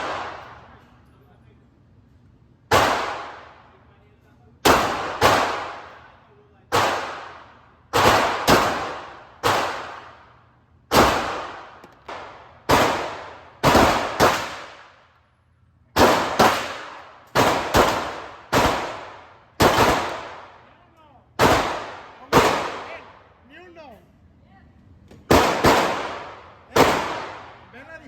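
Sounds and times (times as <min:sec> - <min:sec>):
handgun shots echoing: 0:10.9 - 0:14.9, 0:16.0 - 0:20.5, 0:25.2 - 0:27.6.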